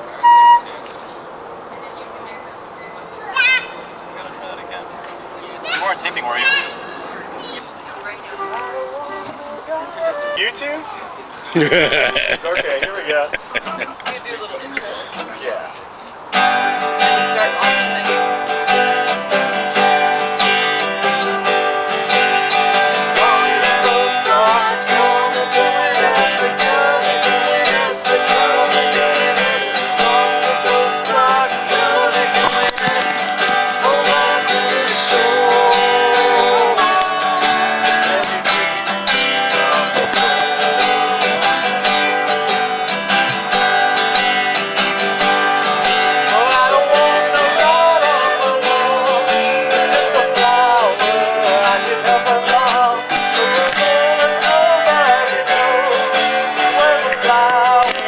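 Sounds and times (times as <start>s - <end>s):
acoustic guitar strummed: 0.0s - 0.8s, 16.3s - 58.0s.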